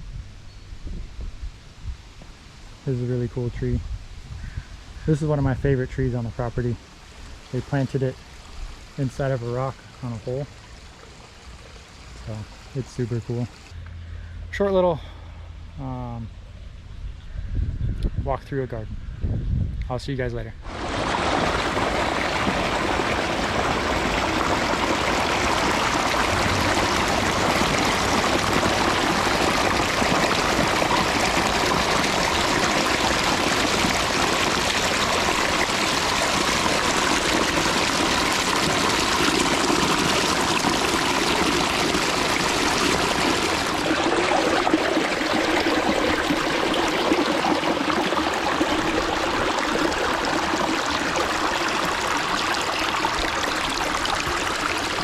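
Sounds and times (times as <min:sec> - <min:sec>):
waterfall splashing over rocks: 0:20.7 - 0:55.0.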